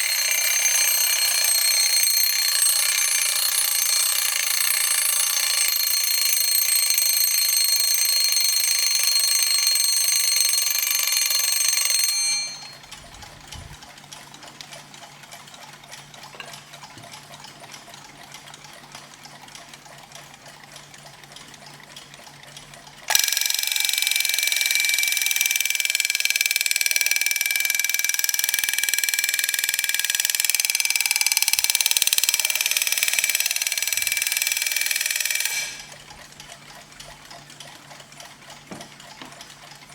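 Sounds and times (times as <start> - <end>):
alarm clock ringing: 0.0 - 12.9, 23.1 - 36.0.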